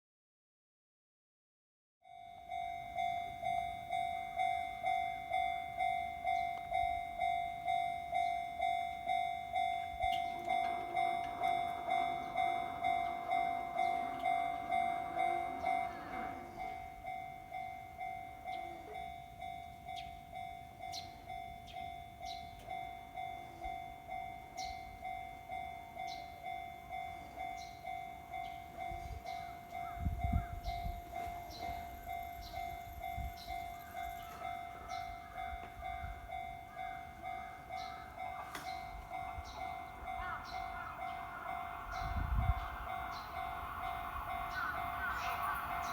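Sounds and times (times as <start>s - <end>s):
level-crossing warning bell: 2.0s - 45.9s
train rushing past: 38.3s - 45.9s.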